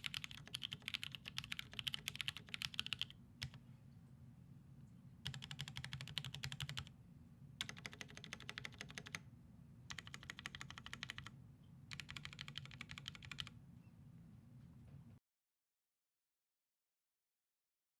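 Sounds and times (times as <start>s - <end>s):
mechanical keyboard typing: 0.0s - 3.6s, 5.3s - 6.9s, 7.6s - 9.2s, 9.9s - 11.3s, 11.9s - 13.5s.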